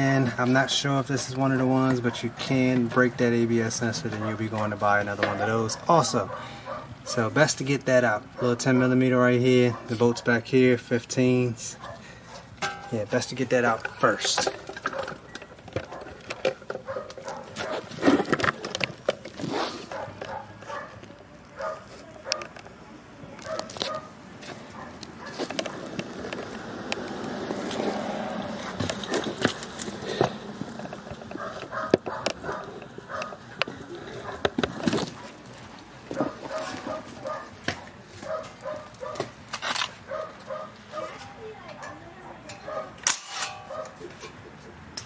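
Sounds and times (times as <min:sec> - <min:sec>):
dog barking: 0:05.3 - 0:07.2, 0:08.4 - 0:08.6, 0:09.6 - 0:10.2, 0:11.8 - 0:12.5, 0:14.9 - 0:15.2, 0:16.8 - 0:17.9, 0:19.9 - 0:21.0, 0:21.6 - 0:22.5, 0:23.4 - 0:24.1, 0:24.7 - 0:25.9, 0:31.4 - 0:33.4, 0:34.2 - 0:34.5, 0:36.2 - 0:39.3, 0:40.1 - 0:41.2, 0:41.8 - 0:43.0, 0:43.7 - 0:44.0.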